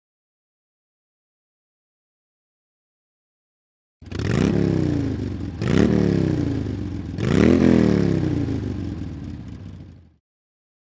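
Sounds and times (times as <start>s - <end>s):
motorcycle engine revving: 4.0s - 10.2s.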